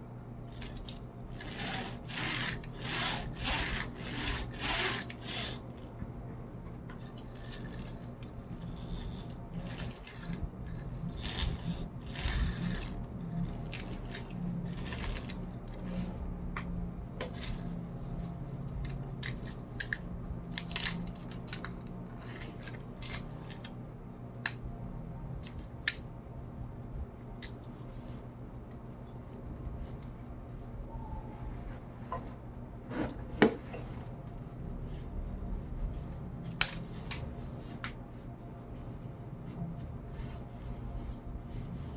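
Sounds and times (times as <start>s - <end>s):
steady low hum: 0.0s - 41.9s
toy truck clicks and scrapes: 0.6s - 5.6s, 7.0s - 16.1s, 18.2s - 23.8s.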